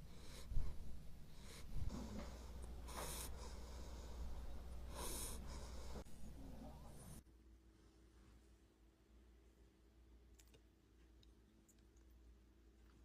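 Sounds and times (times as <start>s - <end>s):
puppy breathing noisily: 0.0s - 6.1s.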